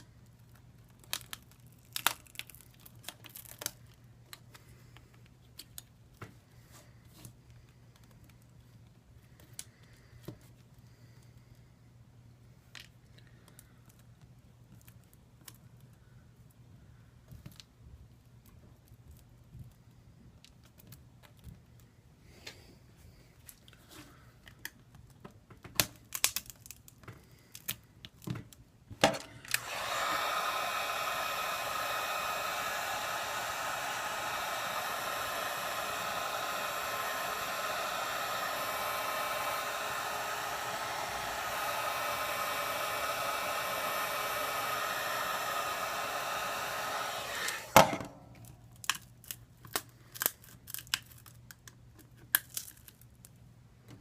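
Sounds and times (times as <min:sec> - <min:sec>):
hot-air blower running: 0:29.0 - 0:48.5.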